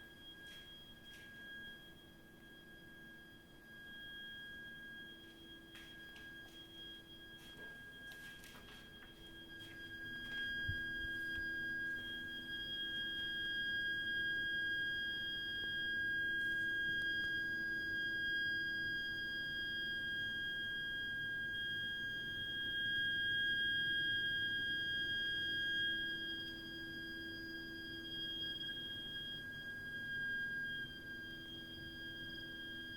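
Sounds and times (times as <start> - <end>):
high-pitched whistling shriek: 9.5 - 19.2, 23.6 - 32.9.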